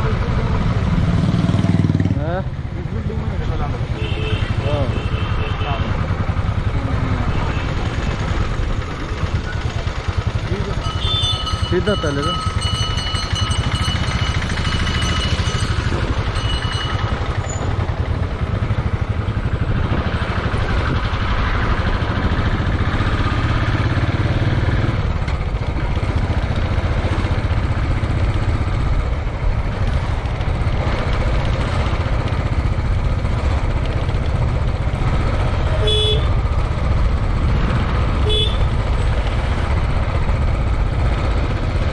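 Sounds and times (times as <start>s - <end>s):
motorcycle engine and road rumble: 0.0s - 41.9s
vehicle horn beeping: 4.0s - 5.8s, 10.8s - 11.8s, 35.8s - 36.4s, 38.2s - 38.8s.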